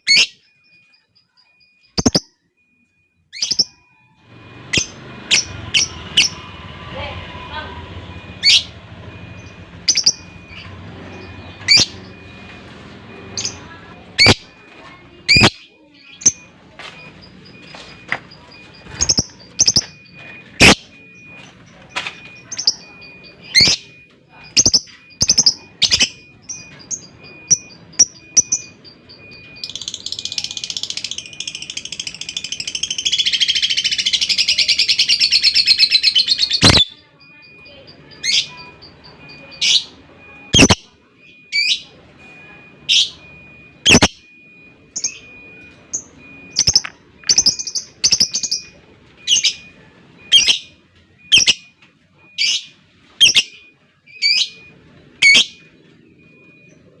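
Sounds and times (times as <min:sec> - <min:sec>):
rapid chattering bird trill: 0:00.0 - 0:02.4, 0:08.2 - 0:12.5, 0:13.2 - 0:41.9, 0:42.7 - 0:44.2, 0:45.0 - 0:51.7, 0:52.3 - 0:56.7
lovebird chirping: 0:00.0 - 0:02.7, 0:04.7 - 0:06.5, 0:09.4 - 0:12.6, 0:15.2 - 0:21.5, 0:22.4 - 0:36.9, 0:37.6 - 0:40.9, 0:42.9 - 0:44.1, 0:45.0 - 0:51.7, 0:52.3 - 0:56.8.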